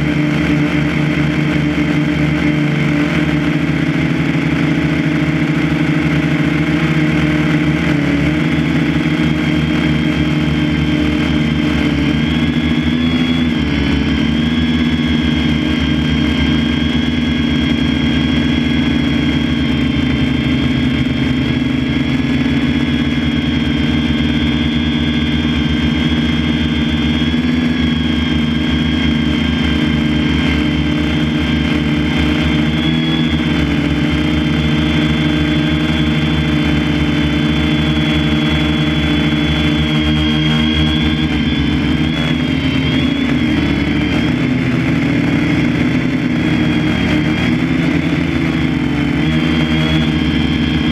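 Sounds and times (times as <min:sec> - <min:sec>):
heavy harvest machinery engine: 0:00.0 - 0:50.9
thin high whine: 0:00.0 - 0:50.9.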